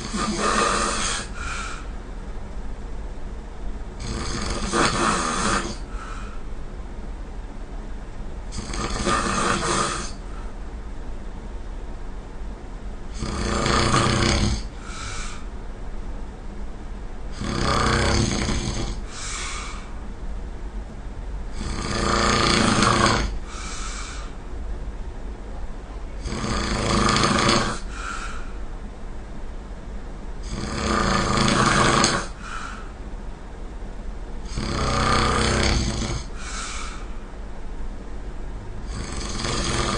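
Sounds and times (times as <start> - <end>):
person snoring loudly: 0.0 - 1.8, 4.0 - 6.2, 8.5 - 10.2, 13.1 - 15.4, 17.3 - 19.9, 21.5 - 24.4, 26.2 - 28.4, 30.4 - 32.8, 34.5 - 37.1, 38.8 - 39.9
faint breath: 0.9 - 2.0, 5.8 - 6.6, 14.6 - 15.5, 19.0 - 20.0, 23.4 - 24.4, 27.8 - 28.7, 32.2 - 33.0, 36.2 - 37.3.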